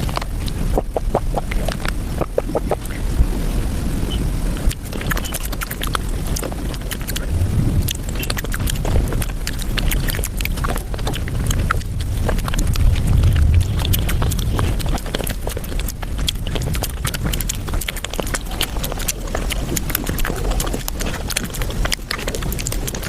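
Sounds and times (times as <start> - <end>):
chewing and mouth smacking: 0.0 - 3.1, 4.5 - 23.0
low rumble: 5.8 - 22.9.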